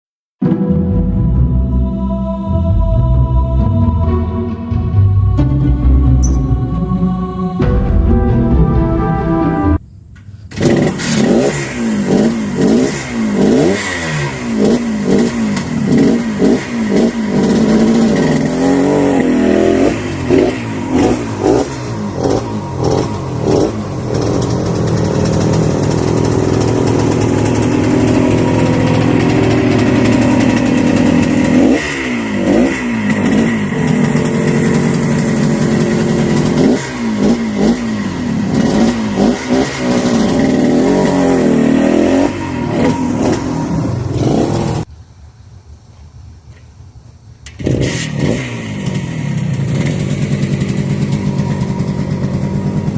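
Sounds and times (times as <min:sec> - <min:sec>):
motorcycle engine revving: 0:10.5 - 0:44.9, 0:47.5 - 0:52.9.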